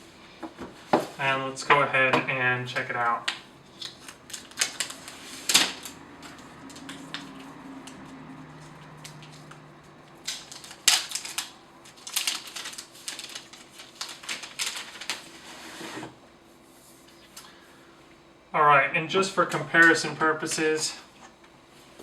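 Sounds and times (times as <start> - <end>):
hands handling tablet and packaging: 3.7 - 15.4.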